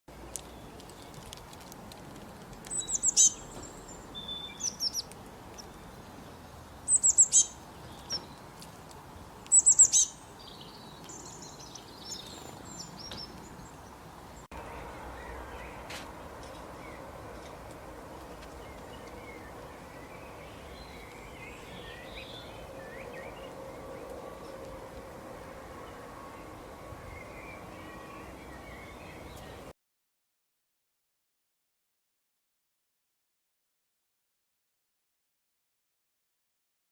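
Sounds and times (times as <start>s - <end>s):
songbird singing: 0.1s - 1.9s, 2.5s - 29.7s
soft bird chirps and chatter: 0.2s - 24.9s, 25.8s - 29.7s.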